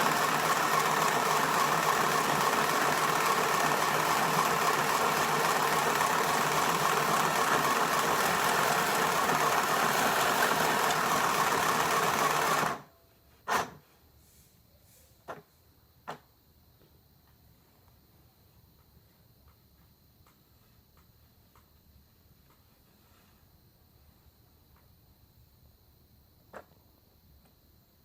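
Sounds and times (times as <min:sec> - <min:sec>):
sewing machine running: 0:00.0 - 0:12.9.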